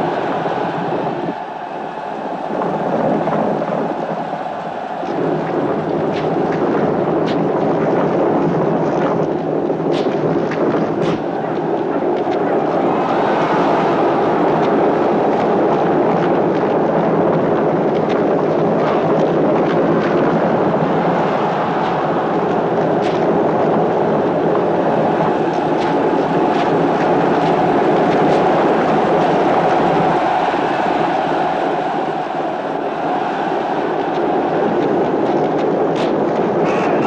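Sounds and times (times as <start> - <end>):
chariot wheels rumbling: 0.0 - 37.0
horses galloping: 0.0 - 37.0.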